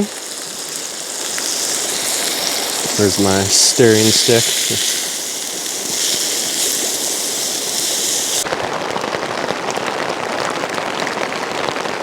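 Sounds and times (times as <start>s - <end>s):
burger patties sizzling in a pot: 0.0s - 8.5s
heavy rain pattering on a tarp: 0.0s - 12.0s.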